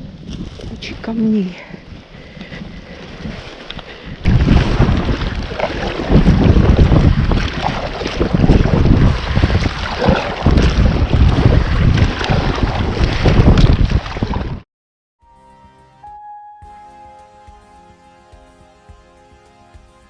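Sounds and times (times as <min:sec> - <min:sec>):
waves and water noise: 0:00.0 - 0:14.6
wind buffeting microphone: 0:00.0 - 0:14.6.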